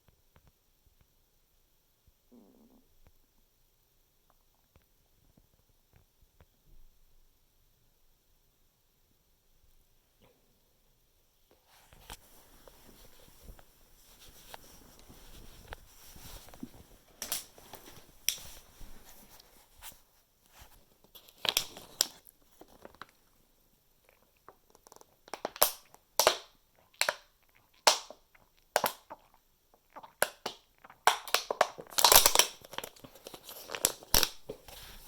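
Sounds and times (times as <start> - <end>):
sharp crackling and crinkling: 11.6 - 35.0.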